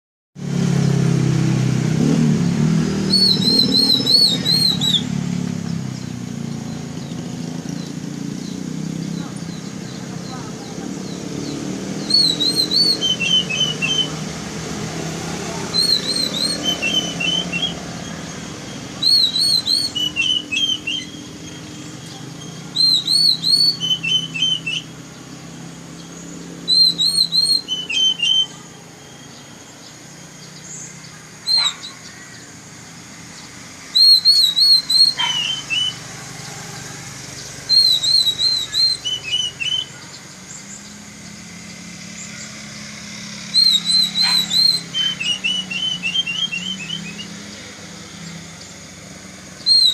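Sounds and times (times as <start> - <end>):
bird singing whistled phrases: 2.9 - 5.2, 6.0 - 14.3, 15.6 - 32.5, 33.4 - 36.1, 37.4 - 41.4, 43.4 - 47.6, 49.6 - 49.9.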